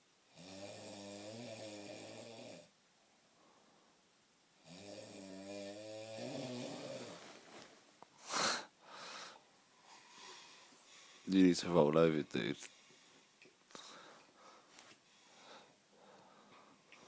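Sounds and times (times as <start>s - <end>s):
man snoring heavily: 0.3s - 2.7s, 4.6s - 7.2s
short sharp snort: 8.2s - 8.7s.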